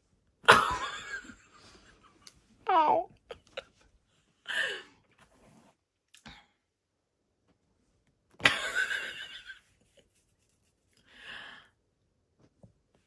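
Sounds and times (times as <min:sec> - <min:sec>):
soft breath: 0:11.0 - 0:11.8.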